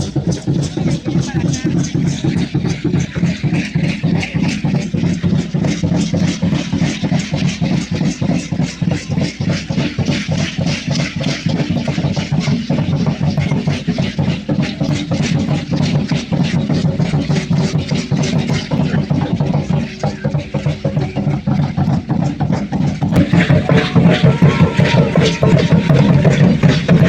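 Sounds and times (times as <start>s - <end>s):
pulsing low wind drone: 23.1s - 27.0s.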